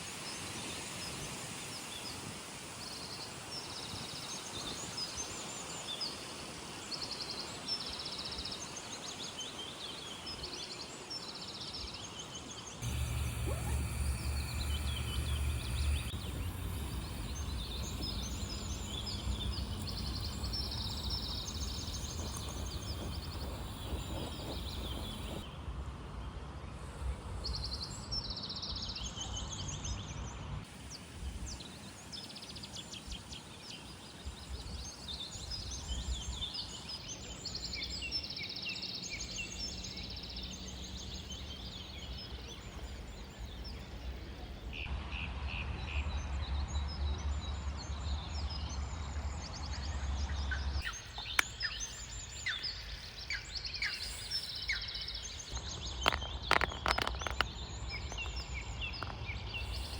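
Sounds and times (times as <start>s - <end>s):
small birds chirping: 11.3s - 25.5s, 50.5s - 59.9s
low rumble of wind: 12.8s - 31.7s, 33.9s - 59.9s
sharp clicks: 55.5s - 59.9s.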